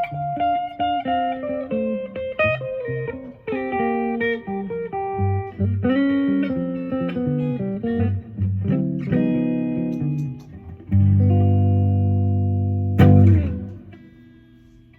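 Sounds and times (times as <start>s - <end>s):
electric guitar playing slow blues: 0.0s - 14.9s.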